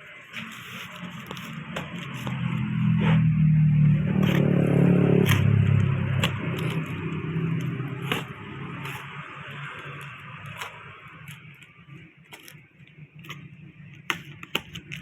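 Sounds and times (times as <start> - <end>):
vehicle engine running: 0.4 - 12.1.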